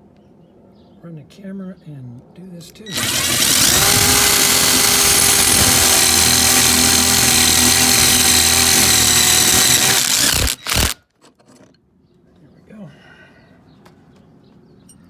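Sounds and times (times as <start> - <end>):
power drill running: 2.9 - 11.0.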